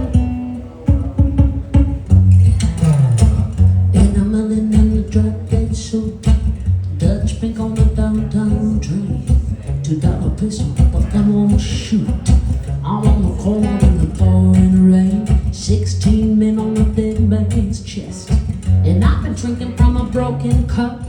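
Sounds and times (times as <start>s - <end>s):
band playing blues rock: 0.0s - 21.0s
woman singing: 18.9s - 21.0s.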